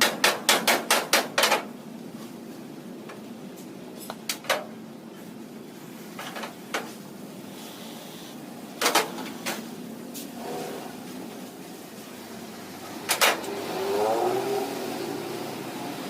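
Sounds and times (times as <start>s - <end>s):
hammer knocking sheet steel: 0.0s - 1.7s.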